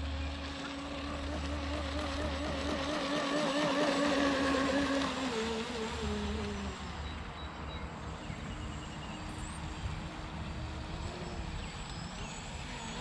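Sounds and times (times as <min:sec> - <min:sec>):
electric motor whining: 0:00.0 - 0:07.4.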